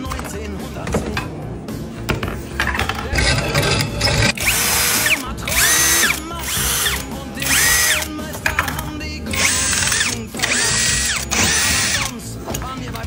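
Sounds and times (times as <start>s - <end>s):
background music: 0.0s - 13.0s
power drill whining: 4.0s - 8.2s, 9.3s - 12.2s.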